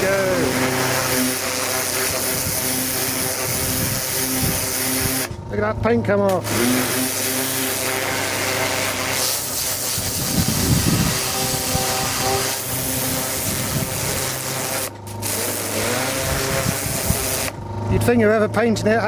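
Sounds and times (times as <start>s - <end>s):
pressure washer jet hissing on metal: 0.0s - 5.4s, 6.3s - 17.6s
pump humming: 0.0s - 19.0s.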